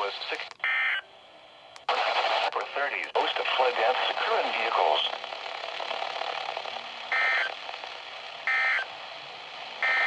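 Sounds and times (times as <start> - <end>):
radio hiss: 1.9 - 5.3.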